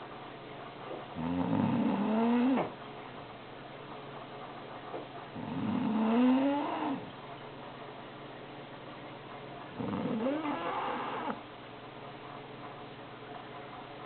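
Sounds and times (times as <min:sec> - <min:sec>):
pet snoring: 0:01.2 - 0:02.8, 0:05.4 - 0:07.1, 0:09.8 - 0:11.4.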